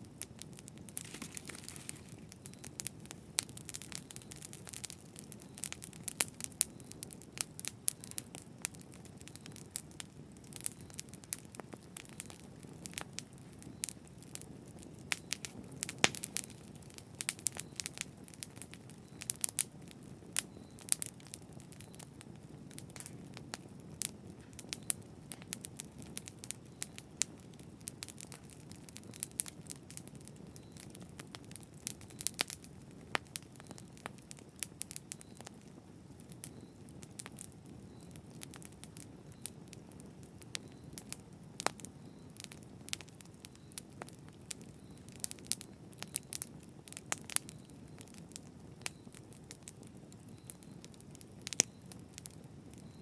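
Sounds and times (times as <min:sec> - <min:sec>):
burning wood crackling and popping: 0:00.0 - 0:53.0
flames rushing: 0:00.8 - 0:04.0.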